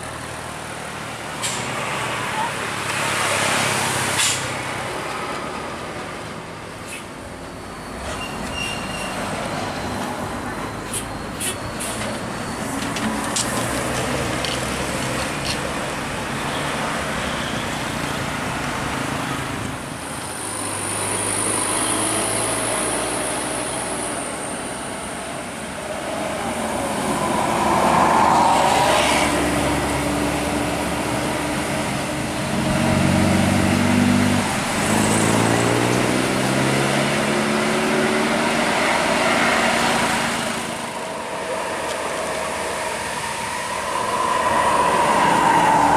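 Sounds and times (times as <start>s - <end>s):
heavy vehicle engines running: 0.0s - 45.9s
road traffic passing: 0.0s - 45.9s.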